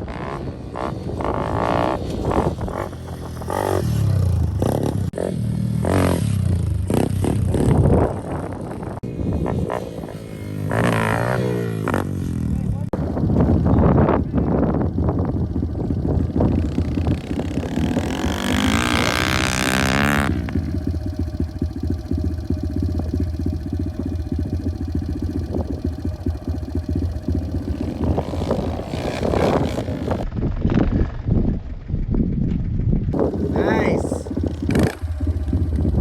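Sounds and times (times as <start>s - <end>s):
pit bike engine revving: 0.0s - 30.3s, 33.1s - 36.0s.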